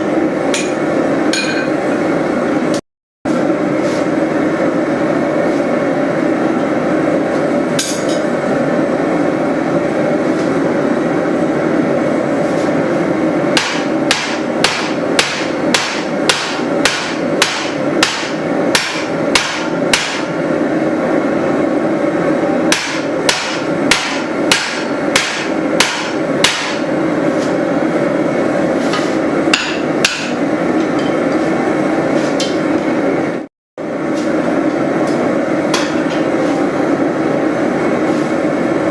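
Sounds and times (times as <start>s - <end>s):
hammer striking hot steel: 0.5s - 1.8s, 7.7s - 8.3s, 13.5s - 20.4s, 22.7s - 27.6s, 28.9s - 31.3s, 35.0s - 36.4s.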